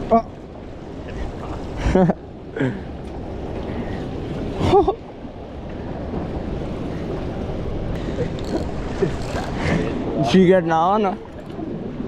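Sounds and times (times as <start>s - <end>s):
water sloshing against boat: 0.0s - 12.0s
wind on microphone: 5.8s - 10.4s.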